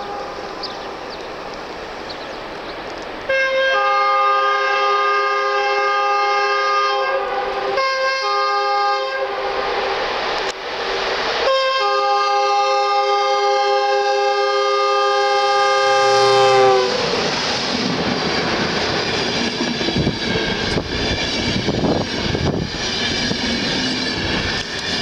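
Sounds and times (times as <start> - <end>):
two-note locomotive air horn: 3.3 - 9.8, 11.4 - 17.3
rushing noise: 9.1 - 13.1, 15.7 - 25.0.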